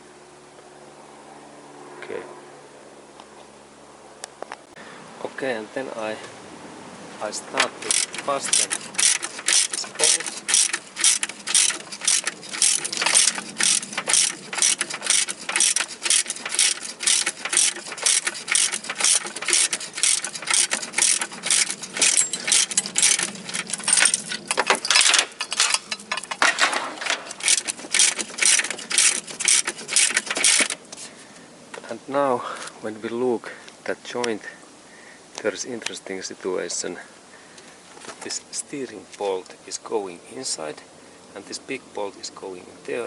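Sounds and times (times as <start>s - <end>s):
ratchet wrench clicking: 7.6s - 26.6s, 27.3s - 30.8s.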